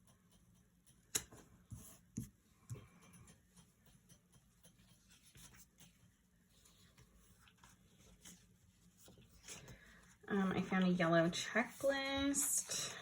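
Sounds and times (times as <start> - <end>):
paper rubbing and rustling: 4.7 - 10.0.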